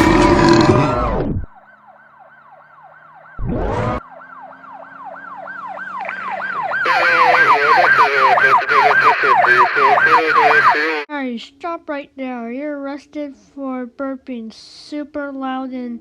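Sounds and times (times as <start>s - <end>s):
exaggerated burp: 0.0s - 1.1s
police siren yelping: 0.9s - 11.1s.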